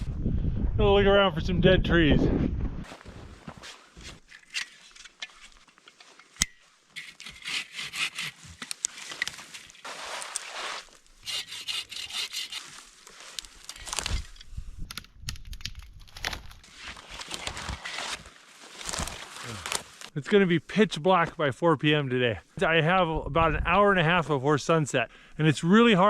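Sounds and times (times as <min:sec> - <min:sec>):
footsteps crunching through snow: 0:02.8 - 0:04.3, 0:08.3 - 0:11.2, 0:12.1 - 0:14.3, 0:16.6 - 0:20.2.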